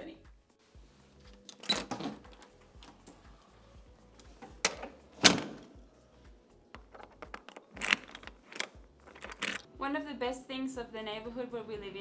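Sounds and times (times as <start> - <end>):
door clunking shut: 1.6 - 2.5, 4.4 - 5.7.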